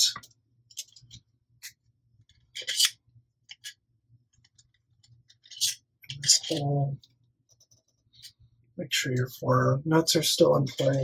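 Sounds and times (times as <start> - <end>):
plastic parts clicking and rattling: 0.1 - 8.4, 10.6 - 11.0.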